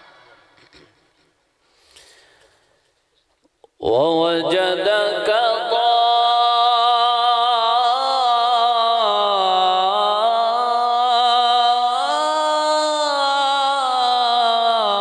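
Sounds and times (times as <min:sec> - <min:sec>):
melodic recitation voice: 0:03.7 - 0:15.0.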